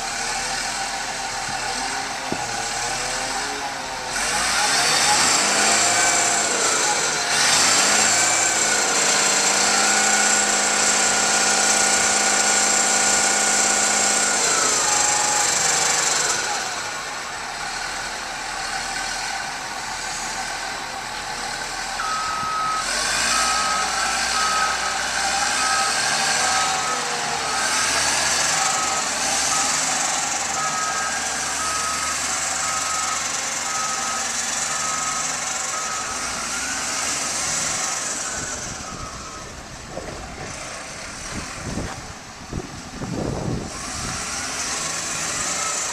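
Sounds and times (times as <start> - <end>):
diesel engine running: 0.0 - 45.9
backup alarm beeping: 22.0 - 24.9, 25.5 - 39.6.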